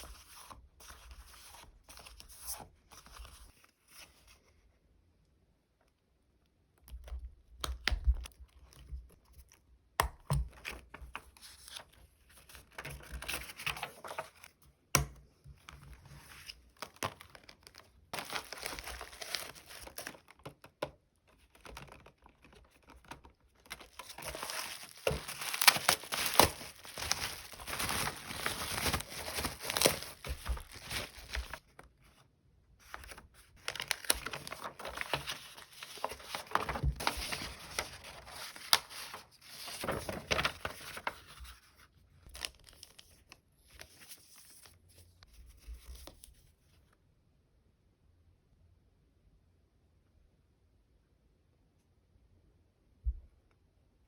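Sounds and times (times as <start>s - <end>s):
plastic packaging crinkling: 16.3s - 20.5s, 21.5s - 31.8s, 32.9s - 41.2s.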